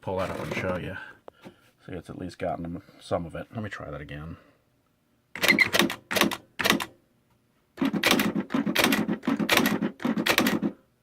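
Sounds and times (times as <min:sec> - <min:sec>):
typewriter strikes clattering: 0:07.8 - 0:10.7.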